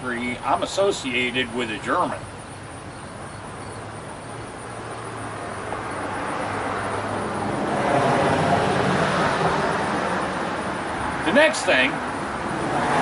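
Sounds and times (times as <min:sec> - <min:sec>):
vehicle passing by: 0:03.8 - 0:13.0.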